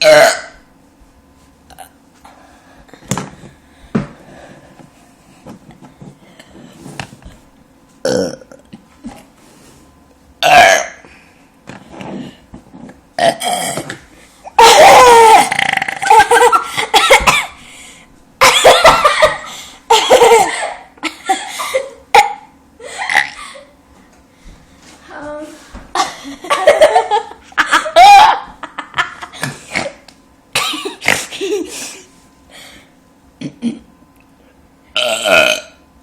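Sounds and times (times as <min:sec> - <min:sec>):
person burping: 0:00.0 - 0:00.6, 0:08.0 - 0:08.7, 0:10.4 - 0:11.1, 0:13.2 - 0:14.0, 0:14.6 - 0:16.2, 0:23.0 - 0:23.5, 0:33.4 - 0:33.9, 0:35.0 - 0:35.8
laughter: 0:16.0 - 0:17.5, 0:18.4 - 0:22.0, 0:26.0 - 0:29.5, 0:30.7 - 0:31.9.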